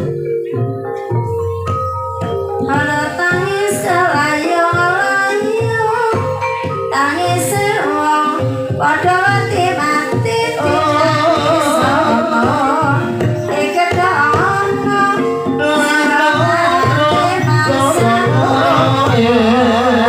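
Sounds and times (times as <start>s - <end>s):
gamelan instruments: 0.0s - 20.0s
hand drumming: 0.0s - 20.0s
woman singing: 2.6s - 20.0s.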